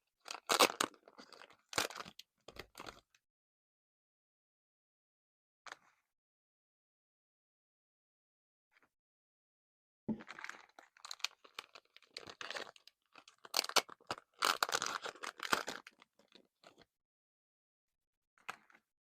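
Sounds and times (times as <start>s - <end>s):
packaging crinkling: 0.3s - 3.0s, 10.3s - 16.8s.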